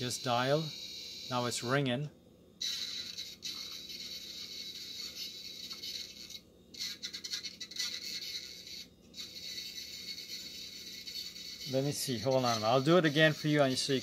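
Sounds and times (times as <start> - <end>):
modem hiss and static: 0.0 - 2.2.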